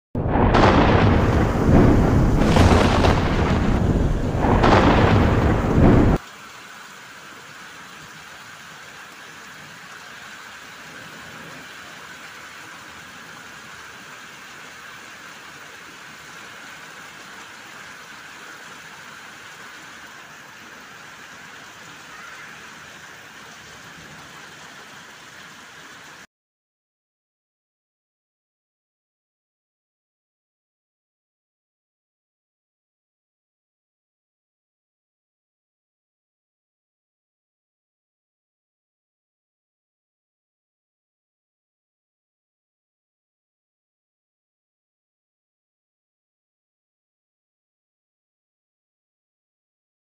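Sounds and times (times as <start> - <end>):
thunder rumbling: 0.2 - 6.2
rain hiss: 0.4 - 26.3.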